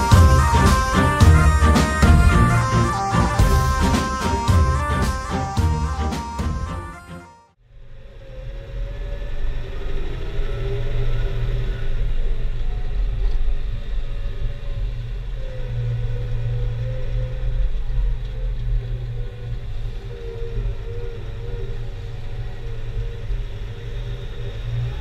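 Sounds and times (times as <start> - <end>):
diesel engine low rumble: 0.0 - 7.0
wavering higher hum: 0.0 - 7.6.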